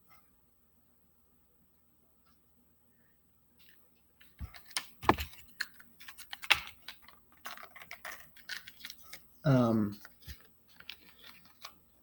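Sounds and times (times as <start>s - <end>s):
packaging crinkling: 4.5s - 9.2s, 9.9s - 11.8s.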